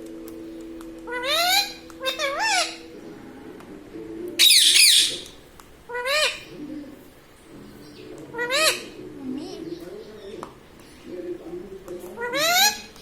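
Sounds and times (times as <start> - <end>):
parrot squawking: 1.1 - 3.0, 4.4 - 6.6, 8.3 - 9.5, 12.2 - 13.0.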